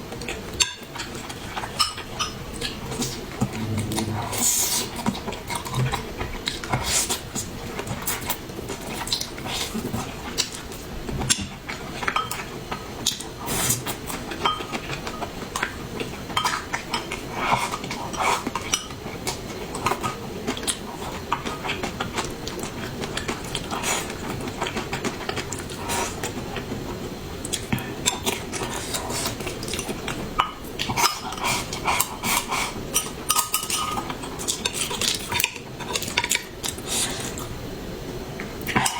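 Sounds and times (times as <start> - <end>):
utensils clinking on dishes: 32.9 - 36.5.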